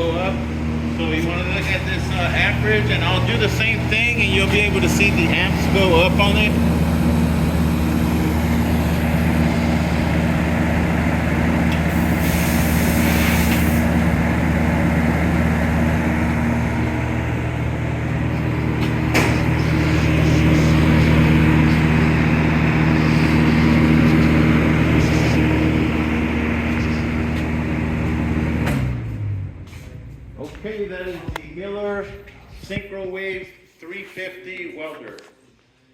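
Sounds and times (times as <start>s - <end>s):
transformer hum: 0.0s - 32.6s
welder electrical buzz: 1.6s - 28.7s.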